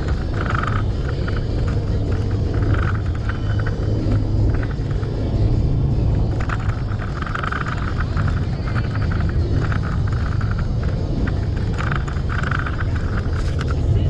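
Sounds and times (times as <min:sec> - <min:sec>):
motorcycle engine rumble: 0:00.0 - 0:14.0
wind noise: 0:00.0 - 0:14.0.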